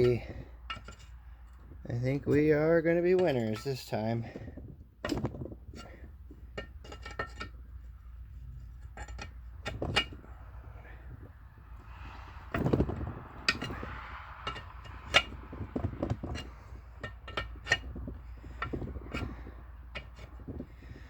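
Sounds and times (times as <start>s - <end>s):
hand tools clicking on metal: 0.0s - 4.2s.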